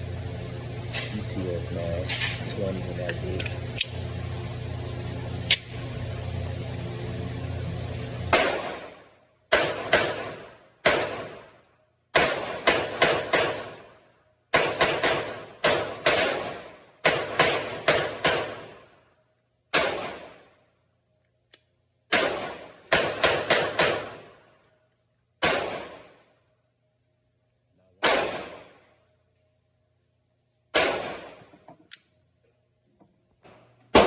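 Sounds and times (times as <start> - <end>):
pistol shots echoing: 8.3 - 11.5, 12.1 - 13.8, 14.5 - 18.8, 19.7 - 20.4, 22.1 - 24.3, 25.4 - 26.2, 28.0 - 28.8, 30.7 - 31.5.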